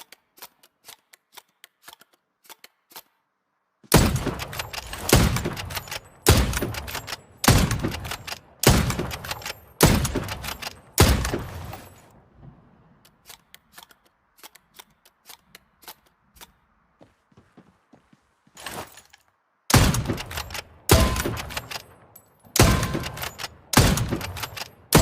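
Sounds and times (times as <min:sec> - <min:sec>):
rifle shots: 0:03.9 - 0:12.0, 0:19.7 - 0:25.0
faint irregular clicks: 0:04.2 - 0:11.4, 0:13.0 - 0:16.6, 0:20.0 - 0:25.0.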